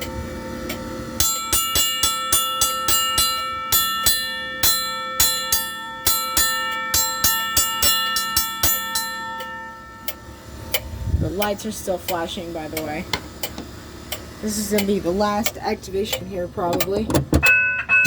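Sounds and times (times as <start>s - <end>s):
crossing signal bell ringing: 0.0s - 13.1s, 17.4s - 18.0s.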